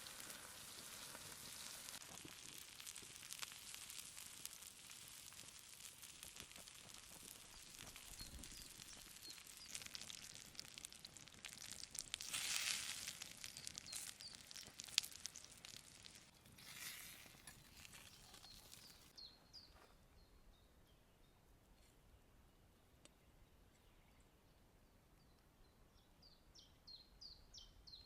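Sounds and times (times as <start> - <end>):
steak sizzling on hot stone: 0.0 - 19.1
bird chirping: 17.6 - 21.5, 22.8 - 28.0.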